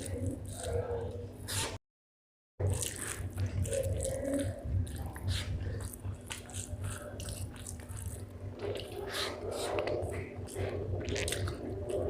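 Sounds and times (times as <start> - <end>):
close chewing and biting: 0.0 - 1.8, 2.6 - 12.0.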